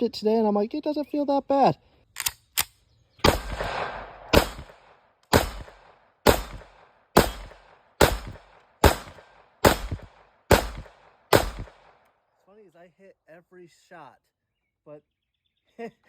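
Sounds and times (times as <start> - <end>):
pistol shots: 3.2 - 12.0.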